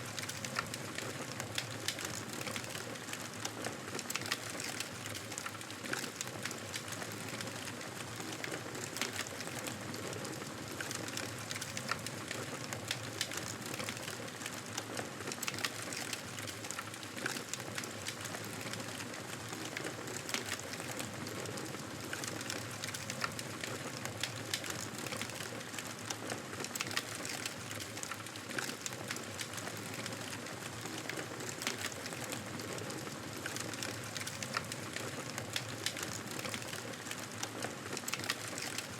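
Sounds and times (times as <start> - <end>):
wood fire crackling: 0.0 - 38.9.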